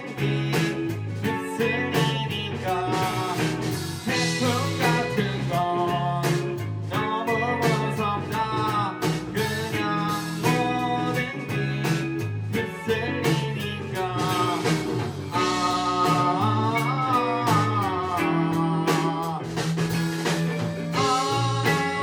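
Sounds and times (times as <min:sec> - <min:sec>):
drum and cymbal hits: 0:00.0 - 0:22.0
live rock band playing: 0:00.0 - 0:22.0.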